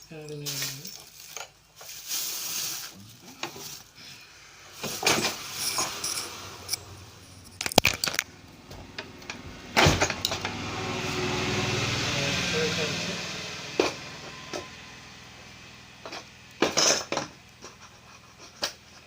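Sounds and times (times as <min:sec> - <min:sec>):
plastic and metal parts clicking: 0:07.5 - 0:08.3.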